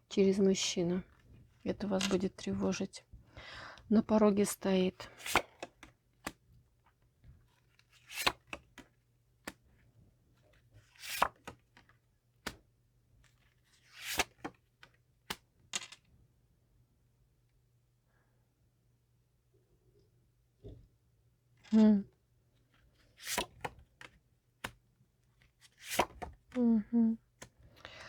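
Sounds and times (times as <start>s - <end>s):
cards sliding swishes: 5.0s - 6.4s, 7.9s - 8.8s, 10.8s - 11.6s, 13.8s - 14.6s, 23.0s - 23.8s, 25.6s - 26.4s
cards snapping and tapping: 5.2s - 6.4s, 8.0s - 9.6s, 10.9s - 12.6s, 23.2s - 24.8s, 25.8s - 26.5s.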